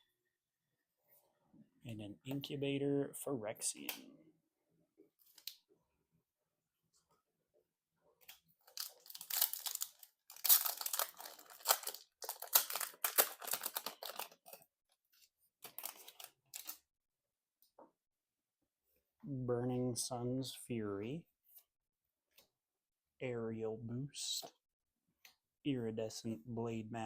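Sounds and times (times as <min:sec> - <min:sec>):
foil wrapper tearing and crinkling: 0:08.6 - 0:14.6, 0:15.6 - 0:16.8.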